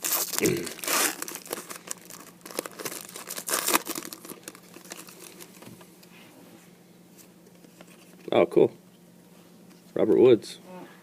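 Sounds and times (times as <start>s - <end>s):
card wrapper crinkling: 0.0s - 5.7s.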